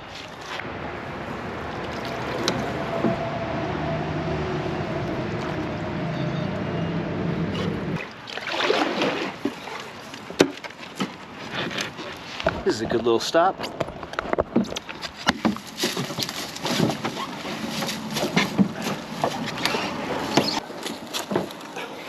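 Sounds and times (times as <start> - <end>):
water rushing: 0.7 - 10.4
knocks and scrapes against canoe: 9.0 - 13.0, 13.6 - 22.0.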